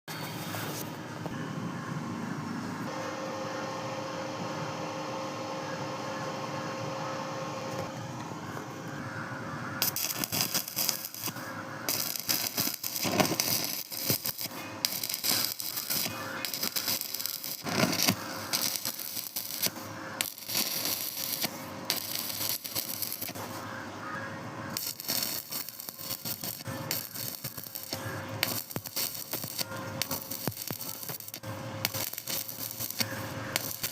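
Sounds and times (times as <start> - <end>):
arc welding hum: 0.1 - 33.9
welding arc crackling: 9.8 - 33.9.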